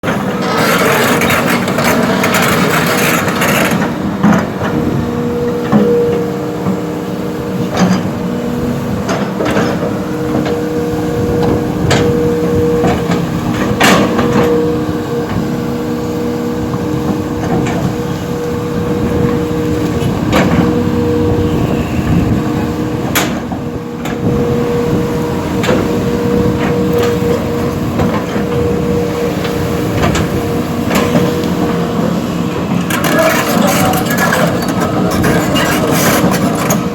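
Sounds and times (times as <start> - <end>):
earthmoving machine engine whining: 0.0 - 36.9
sharp knocks and clanks: 23.0 - 24.2.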